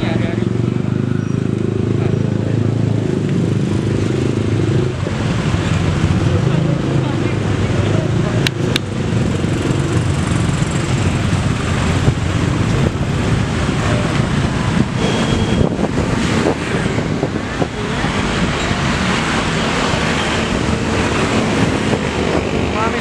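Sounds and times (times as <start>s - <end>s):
cars and motorcycles passing: 0.0s - 23.0s.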